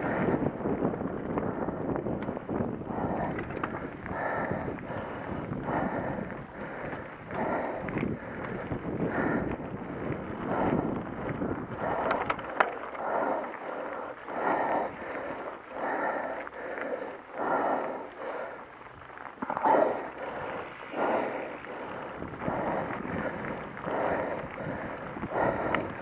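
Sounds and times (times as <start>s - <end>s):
person breathing heavily: 0.0s - 0.6s, 1.4s - 26.0s
wind noise on microphone: 0.0s - 13.6s, 18.8s - 26.0s
bike ride rumble: 0.0s - 26.0s.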